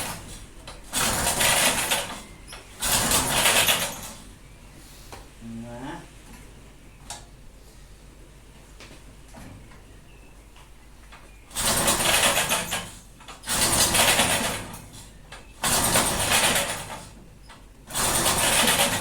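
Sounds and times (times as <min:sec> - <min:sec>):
mower engine pull cord cranking: 0:00.0 - 0:02.2, 0:02.8 - 0:04.2, 0:11.5 - 0:14.9, 0:15.6 - 0:17.1, 0:17.9 - 0:19.0.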